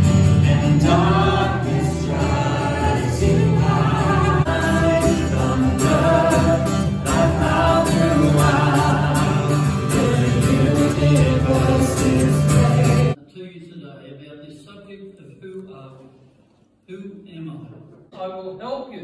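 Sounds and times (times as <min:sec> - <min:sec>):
group singing a hymn: 0:00.0 - 0:13.2.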